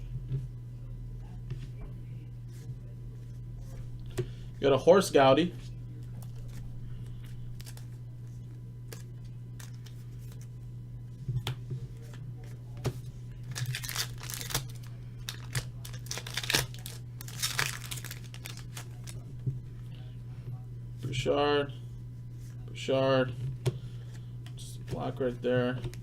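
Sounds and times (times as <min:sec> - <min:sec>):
steady low hum: 0:00.0 - 0:26.0
wrapper tearing and crinkling: 0:13.4 - 0:19.2
cards being handled clicks: 0:13.5 - 0:19.2.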